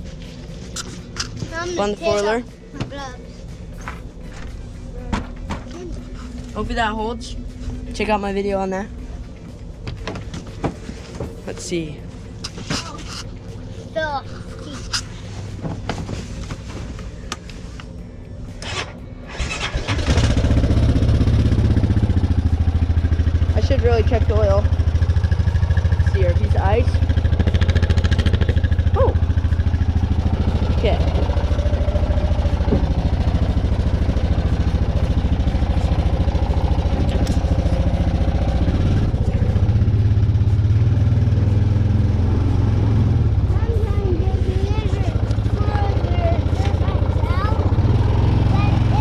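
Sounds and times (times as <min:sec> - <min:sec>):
engine running steadily: 0:00.0 - 0:49.0
engine cranking and starting: 0:18.5 - 0:49.0.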